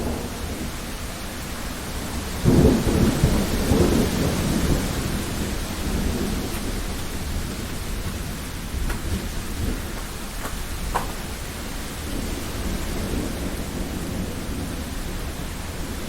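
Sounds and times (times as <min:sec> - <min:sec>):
steady rain: 0:00.0 - 0:16.0
thunderclap rolling: 0:02.4 - 0:14.8.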